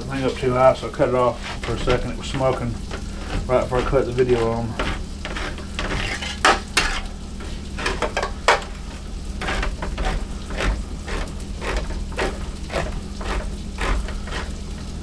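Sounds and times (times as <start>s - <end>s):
patties sizzling in a skillet: 0.0s - 15.0s
sharp clicks and knocks: 7.8s - 14.5s.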